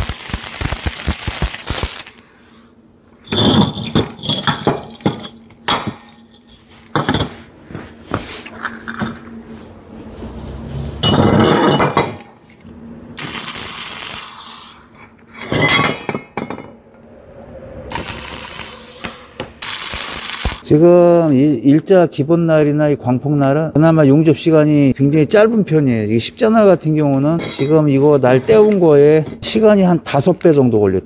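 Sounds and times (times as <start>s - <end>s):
tools clinking on metal: 3.3s - 7.4s, 15.4s - 16.8s.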